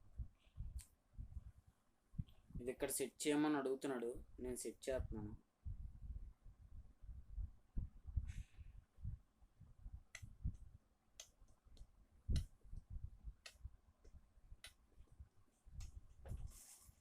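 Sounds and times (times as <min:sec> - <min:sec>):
microphone handling clicks and bumps: 0:15.2 - 0:16.7.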